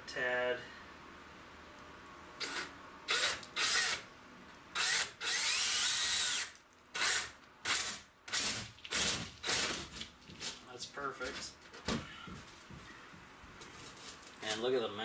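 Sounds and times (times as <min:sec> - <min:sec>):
power drill boring through plywood: 0:02.4 - 0:04.0, 0:04.8 - 0:09.8.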